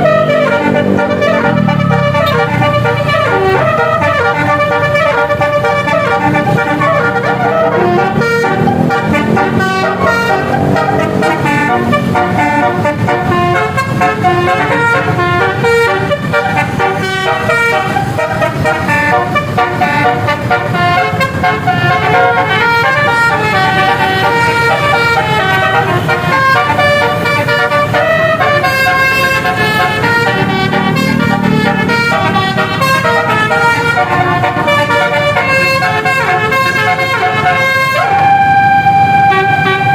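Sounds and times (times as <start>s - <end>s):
bus engine rumbling: 0.0s - 39.9s
multi-tone bus air horn melody: 0.0s - 39.9s.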